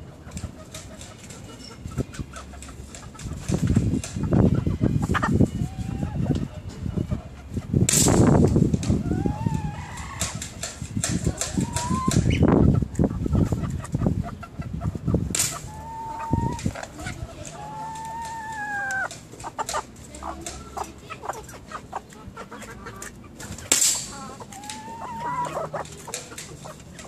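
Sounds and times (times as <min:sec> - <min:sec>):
drawn-out bird calls: 0:15.6 - 0:22.0.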